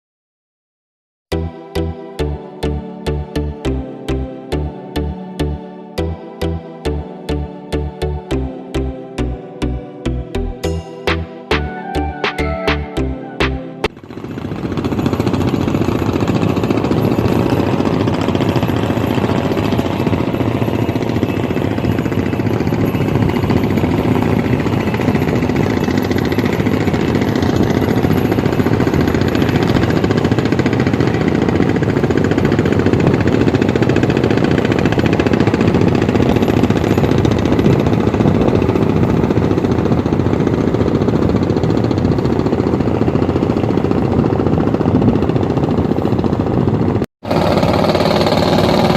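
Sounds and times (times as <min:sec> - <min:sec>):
boat engine knocking: 0:13.8 - 0:48.9.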